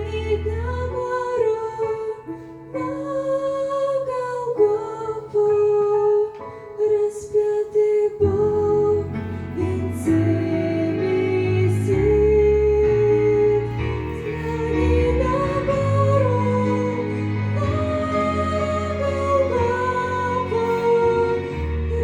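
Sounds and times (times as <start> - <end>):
slow sustained melody: 8.2 - 22.0.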